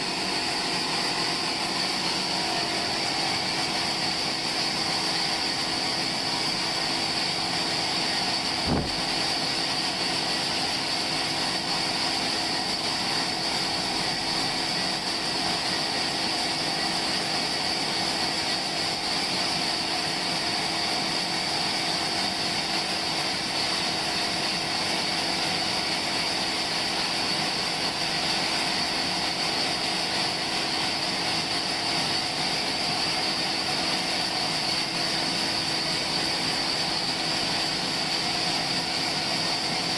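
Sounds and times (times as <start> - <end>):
high mechanical whine: 0.0 - 39.9
sawmill machinery humming: 0.0 - 39.9
short knock: 8.6 - 9.1.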